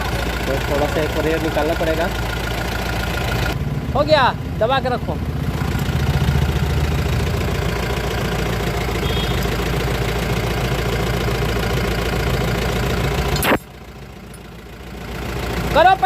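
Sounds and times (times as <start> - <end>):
car engine idling: 0.0 - 16.0
sharp click: 13.4 - 13.7.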